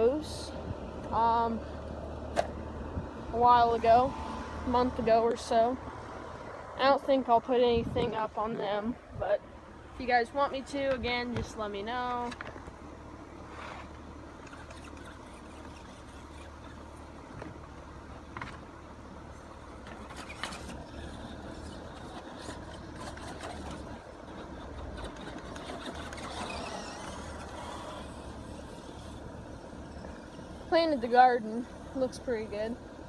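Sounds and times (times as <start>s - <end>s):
steady low hum: 0.0s - 33.0s
toy car electric motor whining: 13.5s - 17.4s, 19.3s - 32.7s.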